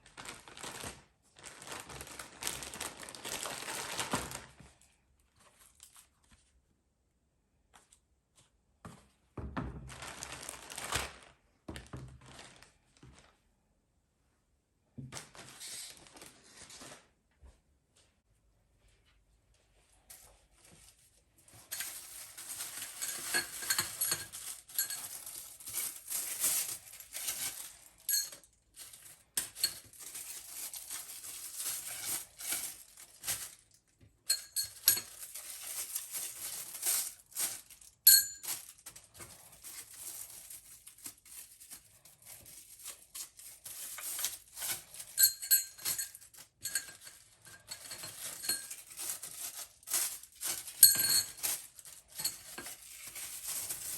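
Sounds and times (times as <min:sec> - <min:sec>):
dishes and glassware clinking: 0:50.8 - 0:51.5.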